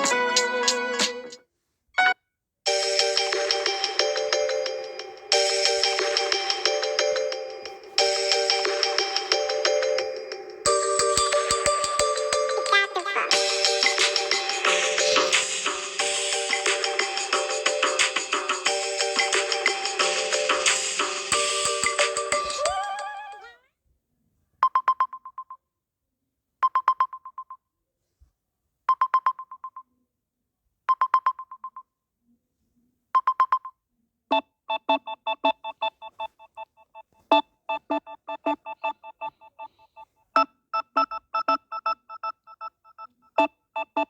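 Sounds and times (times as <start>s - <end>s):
fast beeping ringtone melody: 2.0s - 23.5s, 37.3s - 40.0s
musical ringtone: 2.0s - 23.6s.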